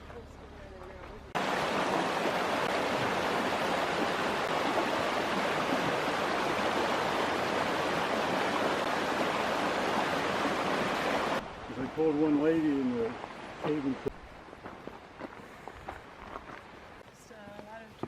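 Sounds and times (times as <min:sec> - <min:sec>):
stream water rushing: 0:01.3 - 0:15.2.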